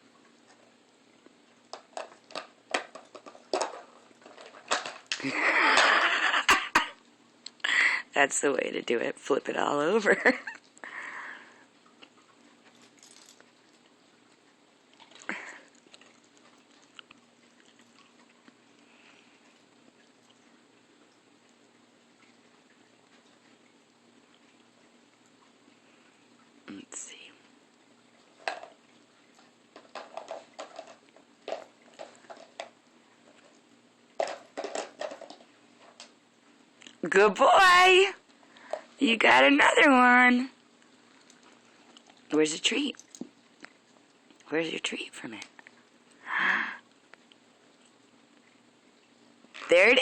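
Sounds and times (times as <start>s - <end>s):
dog pawing at plastic toy: 29.7s - 33.5s, 34.2s - 36.1s.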